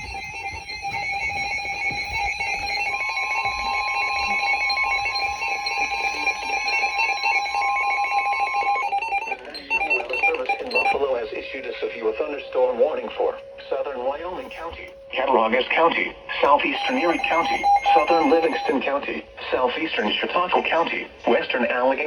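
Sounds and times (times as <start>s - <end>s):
buzzy pulsing signal: 0.0s - 13.1s, 16.5s - 18.8s
steady electronic alarm tone: 0.0s - 14.8s, 16.4s - 18.8s.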